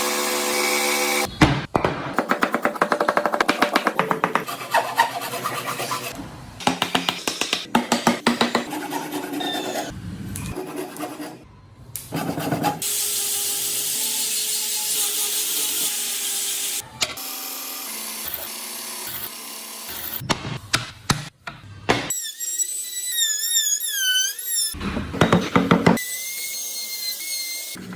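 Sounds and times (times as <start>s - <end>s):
hand tools rasping wood: 2.4s - 6.2s, 7.9s - 9.9s, 10.6s - 11.4s
scraping wood: 2.4s - 6.2s.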